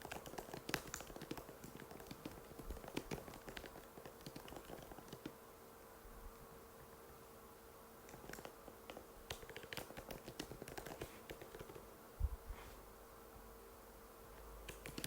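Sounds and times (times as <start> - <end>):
laptop keyboard typing: 0.0 - 5.4, 8.1 - 11.8, 14.7 - 15.0.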